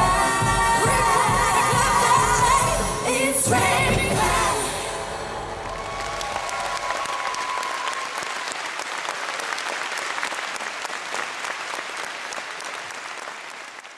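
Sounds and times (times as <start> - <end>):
audience applauding: 5.5 - 13.9.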